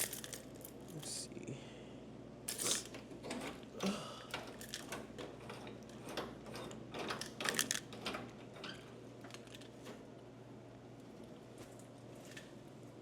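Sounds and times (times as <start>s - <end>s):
vending machine clicks and rattles: 0.0s - 0.5s, 4.3s - 9.6s.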